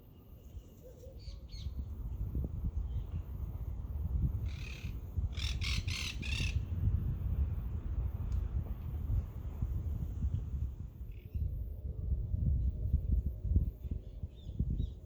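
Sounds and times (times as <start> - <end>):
wind rumble on microphone: 0.4 - 15.0
bird giving harsh calls: 4.5 - 6.6.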